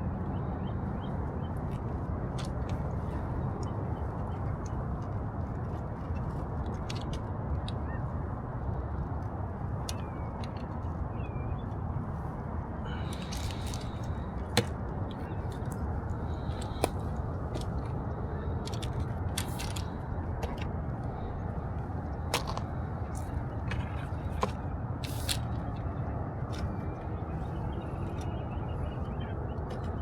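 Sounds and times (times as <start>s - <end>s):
litter clicking and crinkling: 13.0s - 14.7s, 18.6s - 20.7s.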